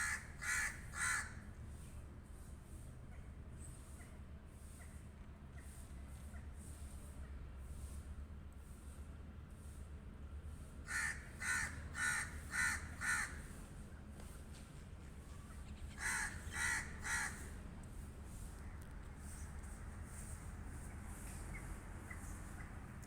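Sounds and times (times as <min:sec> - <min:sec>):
crow cawing: 0:00.0 - 0:01.4, 0:10.9 - 0:13.5, 0:15.9 - 0:17.5.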